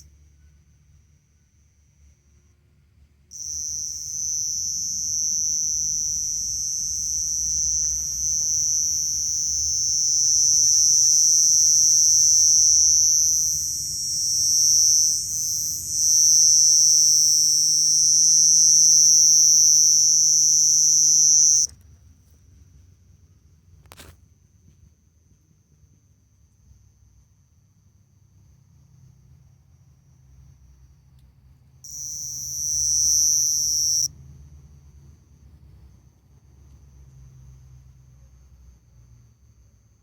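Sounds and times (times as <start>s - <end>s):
cricket trilling: 3.3s - 21.7s, 31.8s - 34.1s.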